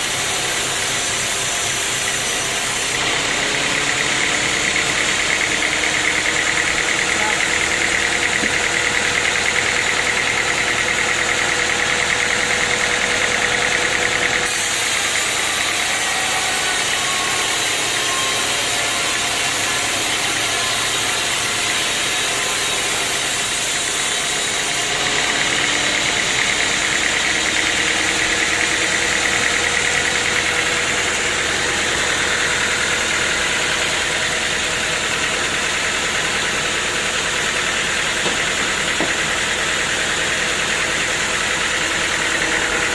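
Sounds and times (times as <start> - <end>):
sawmill saw whining: 0.0 - 42.9.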